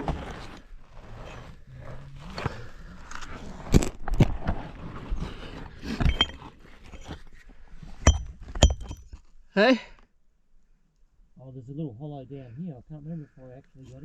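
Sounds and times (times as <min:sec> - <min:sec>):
rocks scraping and rustling: 0:00.0 - 0:09.4
stone knocking on stone: 0:08.0 - 0:09.1.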